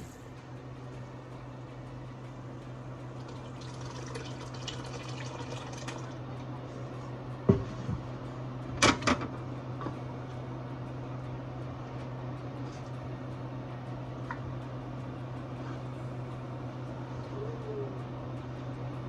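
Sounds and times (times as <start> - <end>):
steady low hum: 0.0 - 19.0
broth pouring into pot: 3.1 - 6.3.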